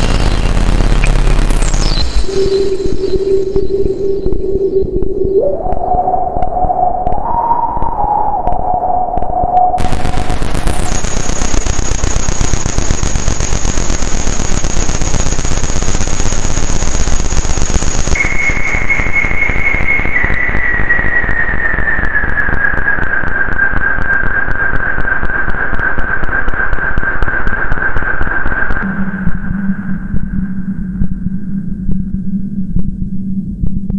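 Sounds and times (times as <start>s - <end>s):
high synthesizer whistle: 0.0s - 11.6s, 18.1s - 27.7s
crackling synthesizer hiss: 0.0s - 31.7s.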